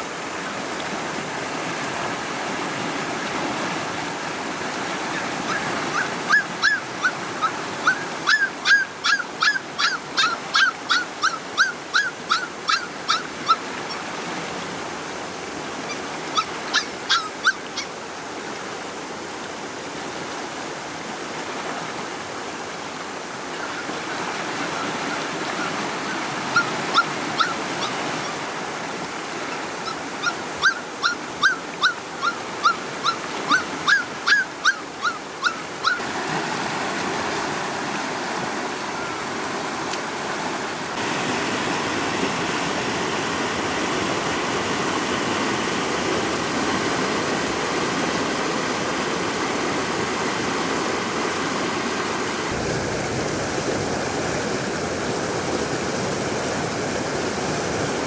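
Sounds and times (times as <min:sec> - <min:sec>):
floodwater rushing: 0:00.0 - 0:58.0
puppies yelping: 0:05.1 - 0:14.0, 0:15.9 - 0:18.0, 0:25.0 - 0:28.4, 0:29.5 - 0:36.0.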